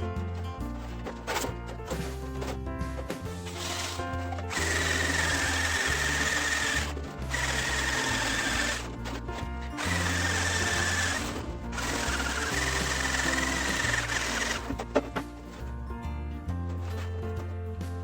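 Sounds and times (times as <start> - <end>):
power tool whining on sheet metal: 0.0 - 2.6, 3.3 - 15.7, 16.7 - 17.5
background music: 0.0 - 18.0.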